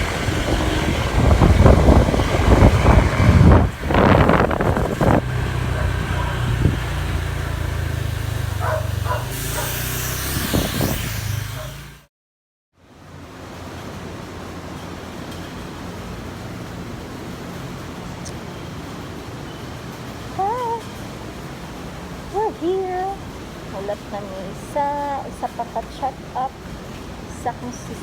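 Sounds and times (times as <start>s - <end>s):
vehicle engine running: 0.0s - 12.1s
wind and road noise: 0.0s - 12.1s, 12.8s - 28.0s.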